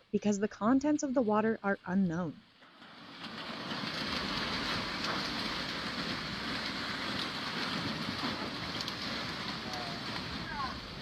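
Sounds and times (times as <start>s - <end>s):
floodwater rushing: 2.8s - 11.0s.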